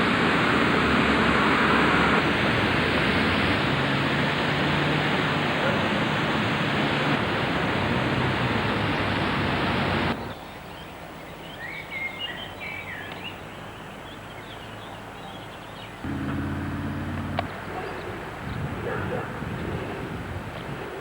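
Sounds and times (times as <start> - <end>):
steady hum: 16.0 - 17.7
loud rushing noise with hum: 16.0 - 18.9.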